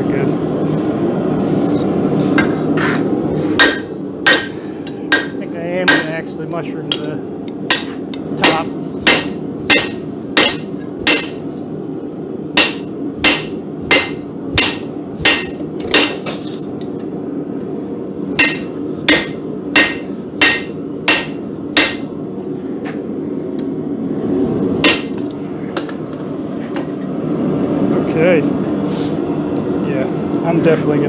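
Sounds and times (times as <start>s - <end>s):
steady background noise: 0.0s - 31.0s
hammer striking steel on anvil: 3.6s - 6.3s, 6.9s - 11.5s, 12.6s - 16.9s, 18.4s - 22.1s, 24.8s - 26.0s.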